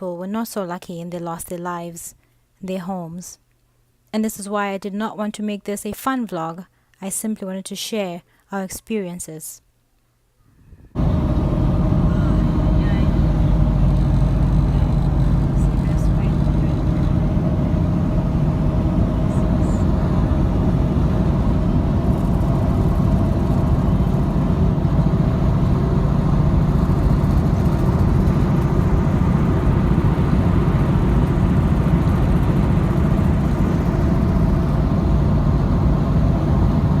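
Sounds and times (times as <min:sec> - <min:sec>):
faint constant hum: 0:00.0 - 0:37.0
road and engine rumble in car: 0:11.0 - 0:37.0.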